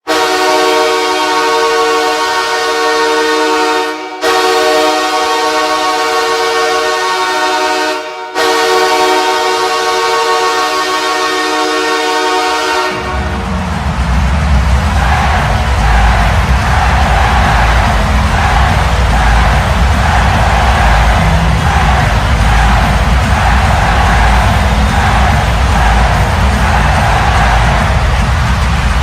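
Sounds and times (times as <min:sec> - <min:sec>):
goal horn blasts: 0:00.0 - 0:13.6
song with deep beat: 0:13.0 - 0:29.0.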